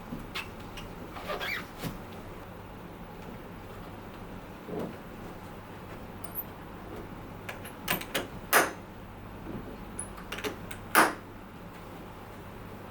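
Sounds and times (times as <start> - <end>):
steady low hum: 1.9 - 12.9.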